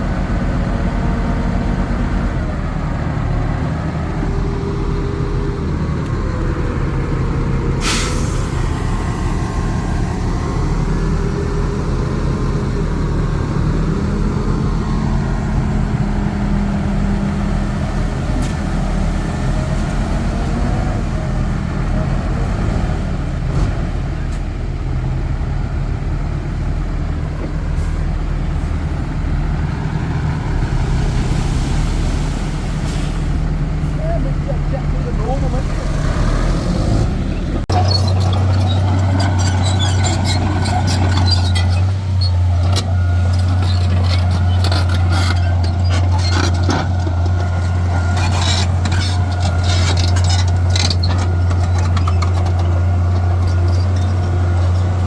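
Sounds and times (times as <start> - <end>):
diesel earthmoving machinery running: 0.0 - 55.0
short hiss of air: 7.8 - 8.8.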